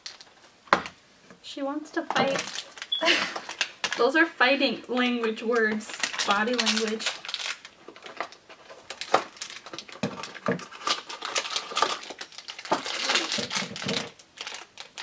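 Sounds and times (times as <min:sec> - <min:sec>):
toy packaging rustling and crinkling: 0:00.0 - 0:00.6, 0:02.0 - 0:04.2, 0:05.0 - 0:15.0.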